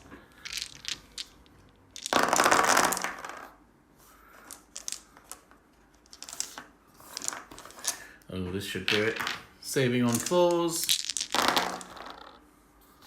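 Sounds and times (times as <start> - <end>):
dice clattering on tabletop: 0.0 - 3.6, 4.4 - 8.0, 8.9 - 12.4
dice clicking in hand: 4.4 - 5.4, 10.1 - 12.4.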